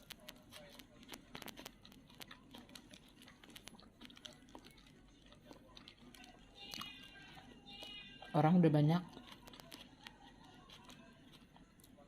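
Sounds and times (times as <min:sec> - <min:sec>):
person chewing food: 0:00.0 - 0:12.0.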